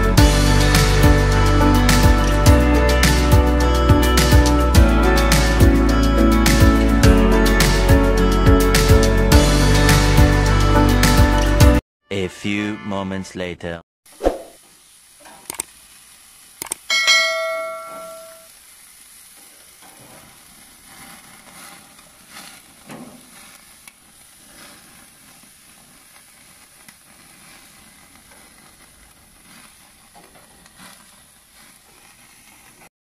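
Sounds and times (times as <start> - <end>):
chicken sizzling and crackling: 14.1 - 32.9
bell-like ding: 16.9 - 18.5.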